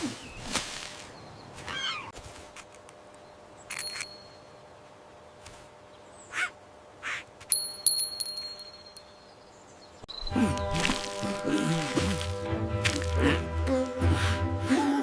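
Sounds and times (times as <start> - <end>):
high ringing ding: 7.5 - 9.2.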